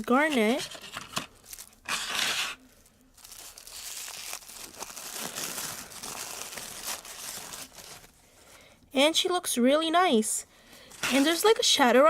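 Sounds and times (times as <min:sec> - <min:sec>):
crinkly packaging rustling: 0:00.0 - 0:08.6, 0:10.9 - 0:11.8.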